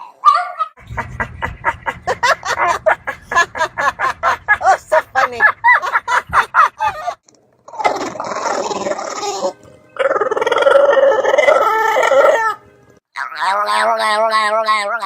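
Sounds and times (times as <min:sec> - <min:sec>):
animal long drawn-out calls: 0:07.7 - 0:12.6.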